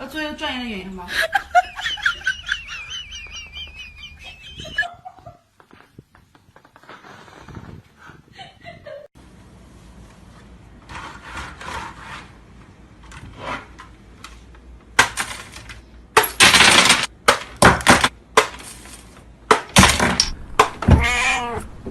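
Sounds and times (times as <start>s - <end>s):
loud crashes and clatters: 15.0s - 20.8s.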